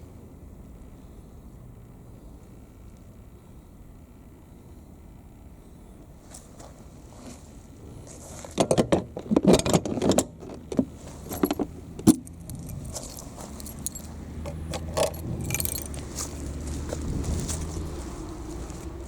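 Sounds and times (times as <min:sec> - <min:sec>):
steady low hum: 0:00.0 - 0:19.0
keys jangling: 0:11.3 - 0:16.4.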